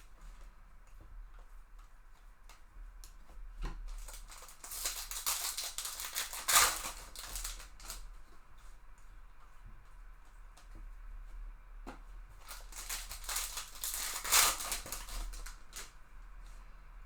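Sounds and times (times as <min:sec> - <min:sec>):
packaging crinkling and tearing: 0:03.9 - 0:08.0, 0:12.4 - 0:15.9.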